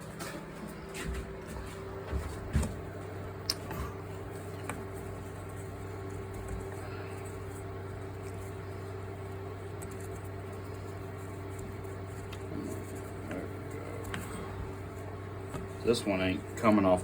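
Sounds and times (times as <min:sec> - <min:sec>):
electric hum: 0:00.0 - 0:17.0.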